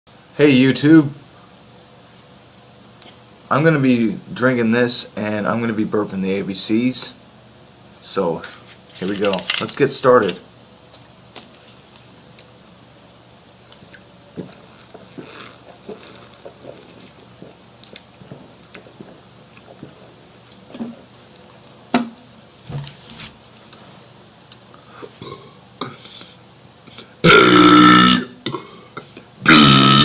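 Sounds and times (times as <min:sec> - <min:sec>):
man belching loudly: 0:27.2 - 0:28.8, 0:29.4 - 0:30.0.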